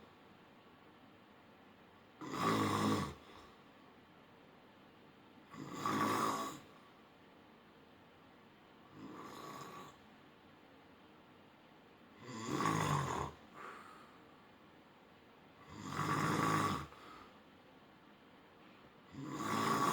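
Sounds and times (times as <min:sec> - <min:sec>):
person snoring: 0:02.2 - 0:03.5, 0:05.5 - 0:06.7, 0:08.9 - 0:10.0, 0:12.2 - 0:13.8, 0:15.6 - 0:17.1, 0:19.1 - 0:19.9.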